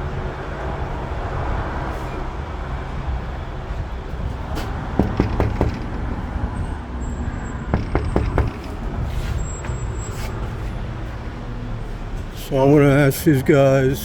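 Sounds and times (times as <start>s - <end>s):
road traffic rumble: 0.0s - 14.0s
sharp knocks: 4.5s - 6.4s, 7.7s - 8.9s.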